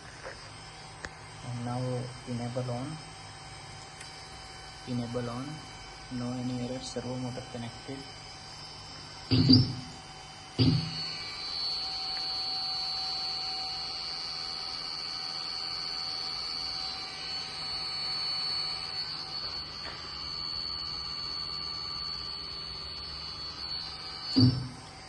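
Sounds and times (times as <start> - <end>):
servo motor whining: 9.0 - 21.2, 22.5 - 25.0.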